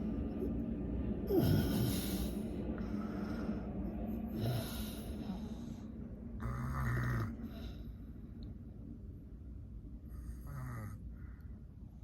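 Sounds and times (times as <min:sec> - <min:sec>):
steady low hum: 0:00.0 - 0:12.0
person snoring: 0:06.4 - 0:07.8, 0:10.2 - 0:11.0.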